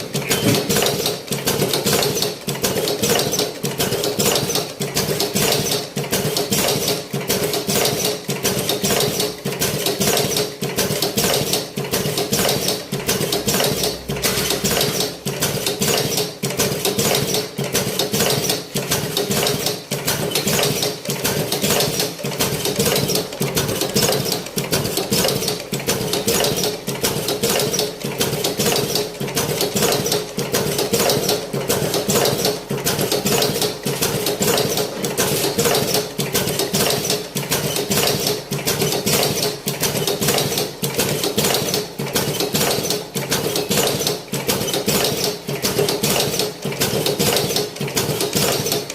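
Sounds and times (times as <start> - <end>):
machine hum: 0.0 - 1.6
machine clattering: 0.0 - 48.9.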